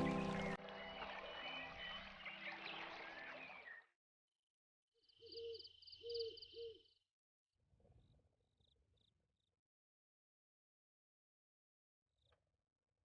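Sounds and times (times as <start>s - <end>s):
faint background music: 0.0s - 2.0s.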